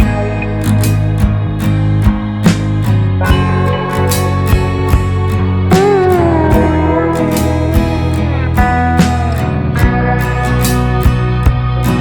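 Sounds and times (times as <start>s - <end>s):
sustained bass: 0.0s - 12.0s
light percussive hits: 0.8s - 11.6s.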